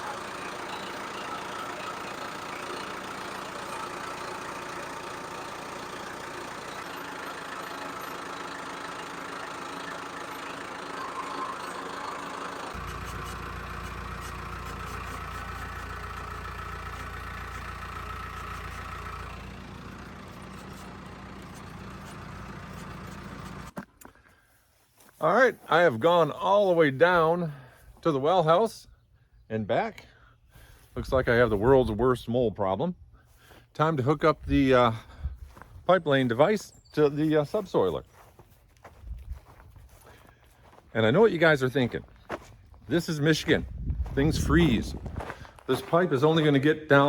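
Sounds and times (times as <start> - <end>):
tractor engine running: 0.0 - 24.1, 33.5 - 47.0.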